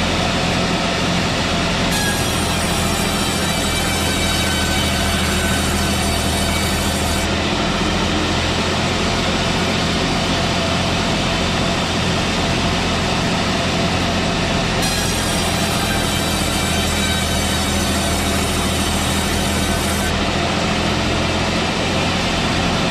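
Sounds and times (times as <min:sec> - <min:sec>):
engine hum: 0:00.0 - 0:22.9
sawmill mechanical drone: 0:00.0 - 0:22.9.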